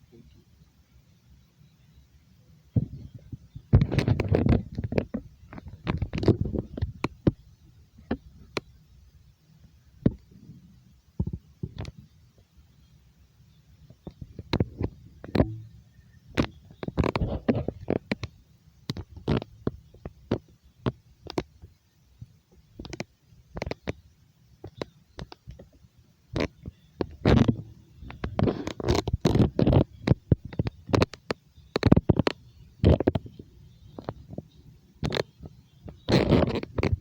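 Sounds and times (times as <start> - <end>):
taps and bumps on microphone: 2.8 - 7.4, 8.0 - 8.7, 10.0 - 10.3, 11.2 - 12.1, 13.9 - 21.8, 22.5 - 24.0, 26.4 - 37.0.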